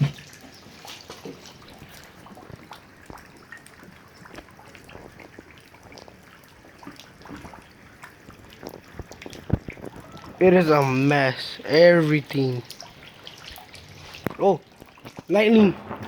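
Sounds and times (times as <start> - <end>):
raindrops ticking: 1.3 - 16.0
rain hissing: 8.7 - 12.7, 15.2 - 16.0.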